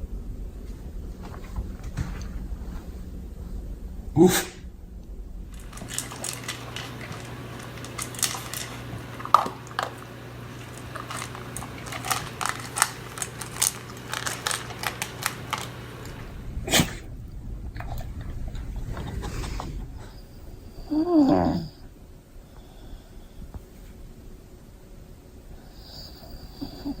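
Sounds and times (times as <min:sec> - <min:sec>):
rustling: 0:00.2 - 0:21.0
dog chewing with wet clicks: 0:05.6 - 0:16.3.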